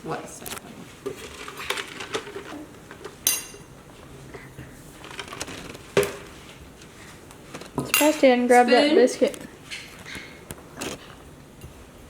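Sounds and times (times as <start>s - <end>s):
dishes clinking on a table: 3.2s - 3.7s, 7.8s - 8.3s
ringing metallic clink: 3.3s - 3.7s.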